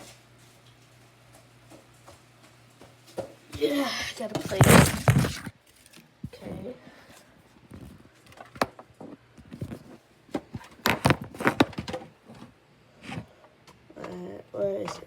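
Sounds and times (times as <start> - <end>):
kitchen items clattering: 4.2 - 5.5.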